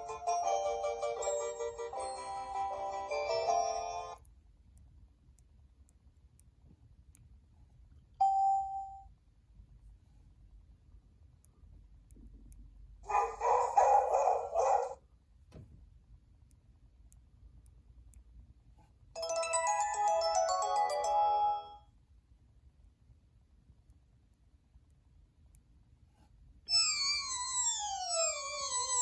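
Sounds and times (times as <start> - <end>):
bell-like ringtone chimes: 0.0 - 4.2, 8.2 - 9.1, 19.2 - 21.8, 26.7 - 29.0
melodic ringtone run: 0.0 - 4.2, 19.2 - 21.8, 26.7 - 29.0.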